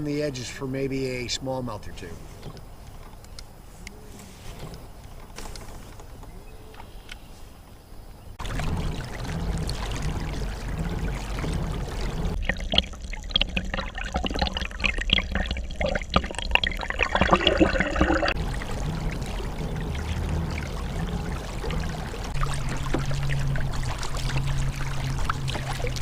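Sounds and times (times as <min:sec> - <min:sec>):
low wind rumble: 0:00.0 - 0:12.4, 0:16.4 - 0:26.0
water splashing and trickling: 0:08.3 - 0:26.0.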